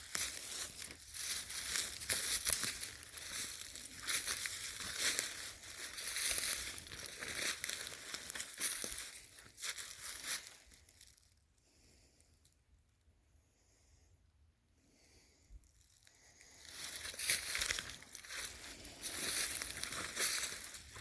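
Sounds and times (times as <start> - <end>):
footsteps crunching dry leaves: 0.0 - 11.2, 16.1 - 21.0.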